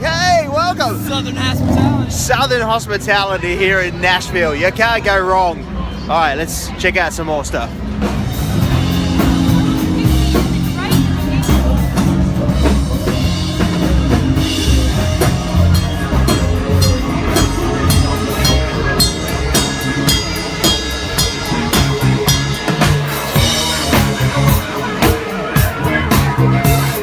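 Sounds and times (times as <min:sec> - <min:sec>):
bass line: 0:00.0 - 0:02.6, 0:08.0 - 0:27.0
drum kit beat: 0:08.0 - 0:27.0
live band music: 0:08.0 - 0:27.0.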